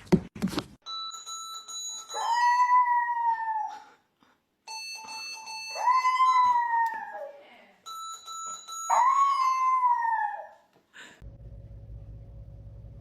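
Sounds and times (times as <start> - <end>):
dog howling: 8.9 - 10.6.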